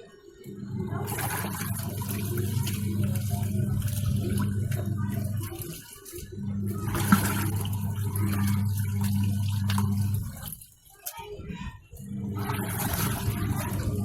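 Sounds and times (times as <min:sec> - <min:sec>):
washing machine motor humming: 0:00.0 - 0:14.0.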